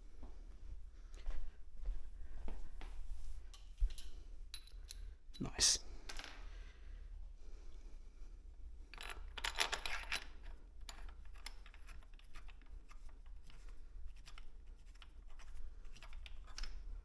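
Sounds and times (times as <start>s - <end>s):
metal parts clicking and rattling: 8.9s - 13.7s.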